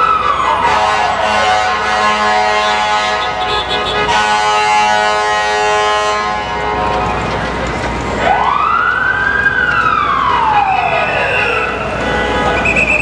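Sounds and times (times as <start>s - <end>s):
fire truck siren: 0.0s - 13.0s
street traffic rumble: 0.0s - 13.0s
air horn blast: 0.7s - 6.8s, 11.2s - 13.0s.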